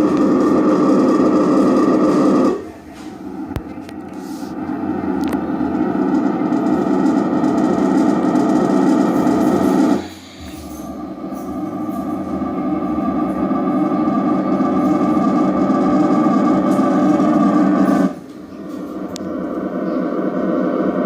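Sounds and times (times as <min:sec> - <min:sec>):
doorbell droning tone: 0:05.2 - 0:19.6.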